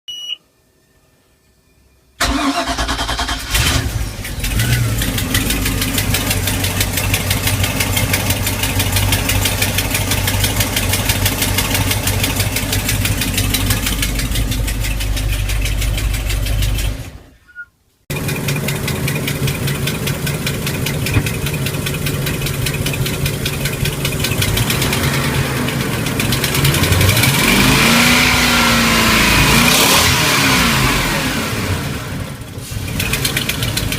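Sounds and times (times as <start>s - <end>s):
marine engine ticking: 4.9s - 17.0s, 18.1s - 27.4s, 32.9s - 33.9s.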